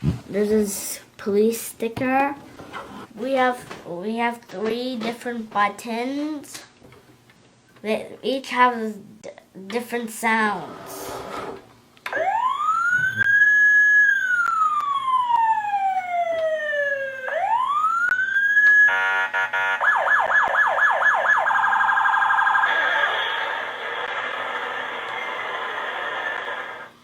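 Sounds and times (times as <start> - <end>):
toy police siren: 12.1 - 23.8.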